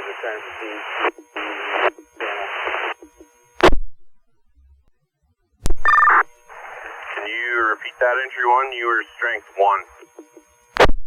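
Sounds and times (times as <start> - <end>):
open-channel radio hiss: 0.0 - 3.4, 6.1 - 10.6
radio static burst: 0.0 - 3.8, 5.7 - 10.2
two-pitch radio beep: 5.8 - 6.3.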